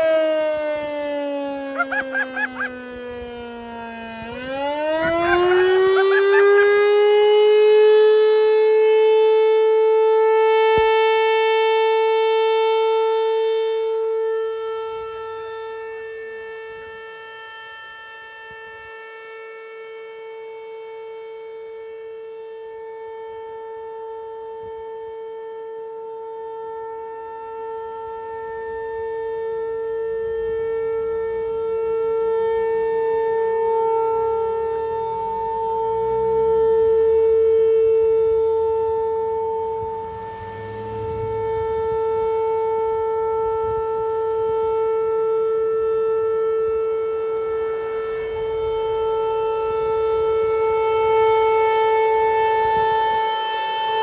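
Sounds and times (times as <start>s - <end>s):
warning siren wailing: 0.0s - 54.0s.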